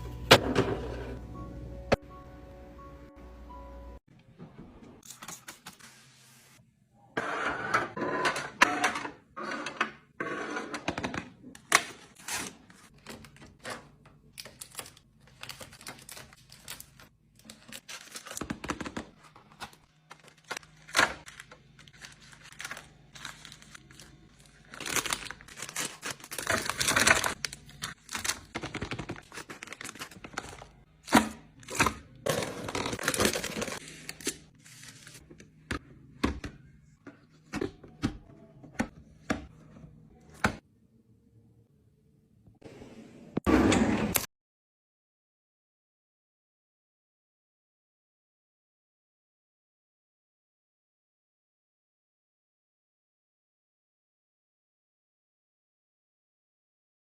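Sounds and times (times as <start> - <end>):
packaging rustling and crinkling: 14.4 - 30.8, 31.6 - 35.2.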